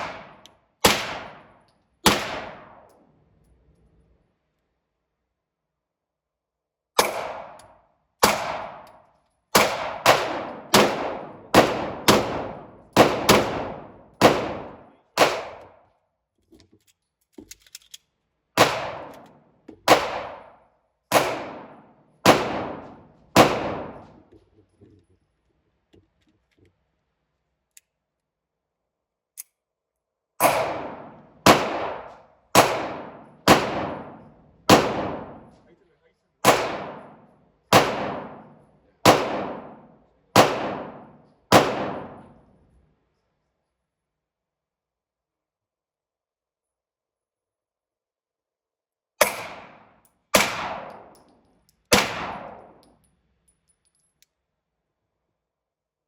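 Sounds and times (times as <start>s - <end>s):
gunshots with ringing echo: 0.0s - 2.9s, 7.0s - 7.6s, 8.2s - 8.8s, 9.5s - 15.6s, 18.6s - 19.2s, 19.9s - 24.2s, 30.4s - 35.5s, 36.4s - 42.4s, 49.2s - 51.2s, 51.9s - 52.8s.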